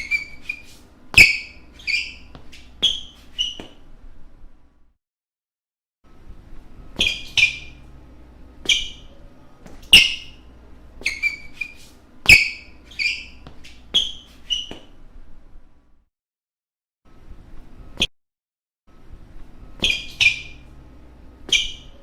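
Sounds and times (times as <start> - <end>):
basketball shoes squeaking: 0.0 - 3.9, 6.9 - 8.0, 8.6 - 15.0, 19.7 - 20.8, 21.4 - 22.0.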